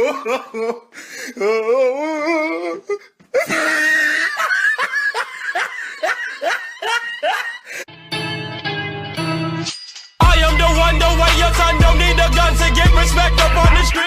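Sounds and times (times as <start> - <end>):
warbling wavering laugh: 3.4 - 7.8
high-pitched ha ha laugh: 3.4 - 7.9.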